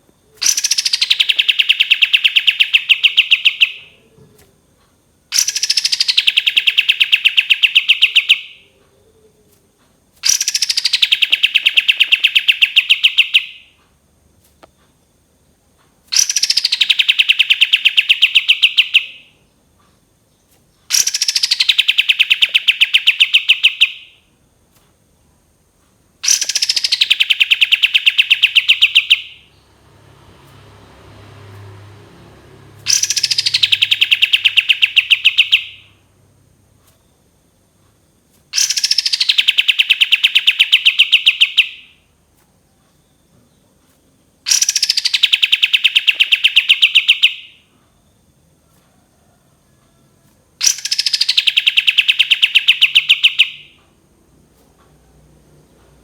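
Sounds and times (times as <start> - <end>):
bird singing whistle and trill: 0.4 - 4.0, 5.4 - 8.7, 10.2 - 13.7, 16.2 - 19.4, 20.9 - 24.2, 26.2 - 29.6, 32.9 - 36.0, 38.6 - 42.0, 44.5 - 47.7, 50.6 - 53.8.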